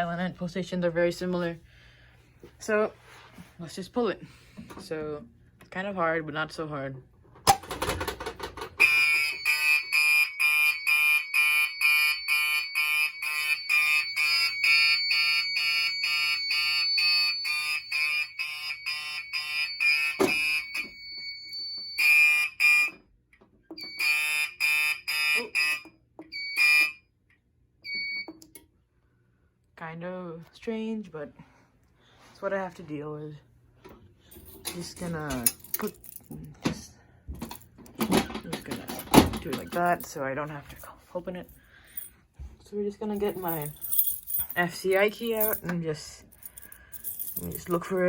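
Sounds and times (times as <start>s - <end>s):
fire alarm horn pulsing: 8.8s - 23.0s, 23.8s - 27.1s.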